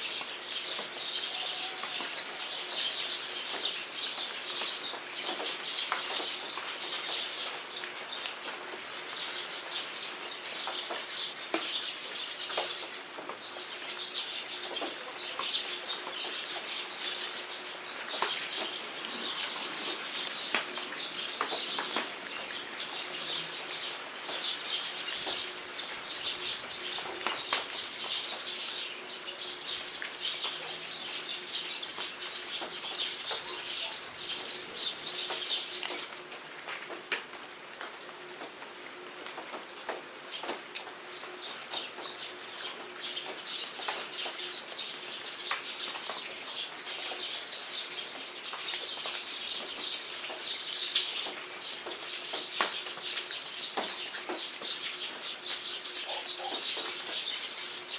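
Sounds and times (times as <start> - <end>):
small birds chirping: 0.0 - 36.3, 40.3 - 57.9
steady rain: 0.0 - 57.9
raindrops ticking: 1.8 - 57.9.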